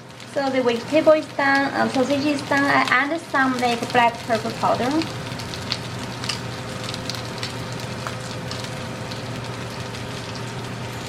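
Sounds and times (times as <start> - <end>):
food sizzling in a frying pan: 0.0 - 11.0.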